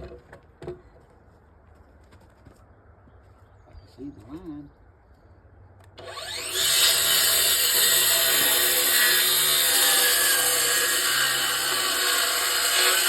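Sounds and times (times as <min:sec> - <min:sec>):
circular saw cutting wood: 0:06.0 - 0:13.0.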